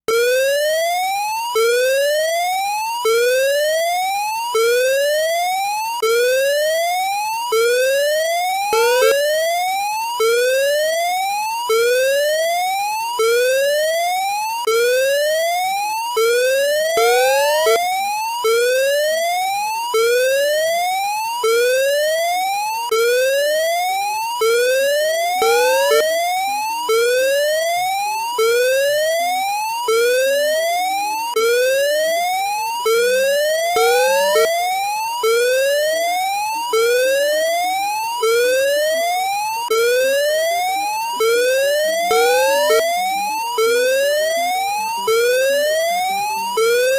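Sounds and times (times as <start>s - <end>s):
whooping alarm tone: 8.5s - 9.7s, 16.2s - 18.1s, 25.4s - 26.2s, 32.9s - 35.5s, 41.2s - 46.9s.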